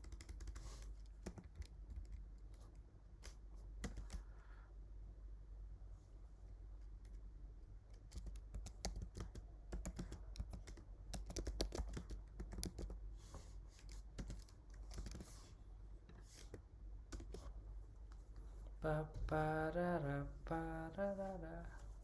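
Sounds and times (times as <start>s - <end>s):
typing on keyboard: 0.0s - 4.3s, 7.9s - 13.0s, 13.7s - 15.4s, 16.2s - 17.5s
low steady hum: 0.0s - 22.0s.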